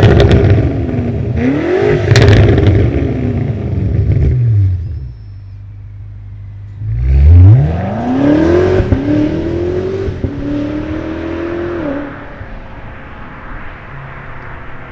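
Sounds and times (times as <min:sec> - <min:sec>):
car engine accelerating hard: 0:06.8 - 0:14.9.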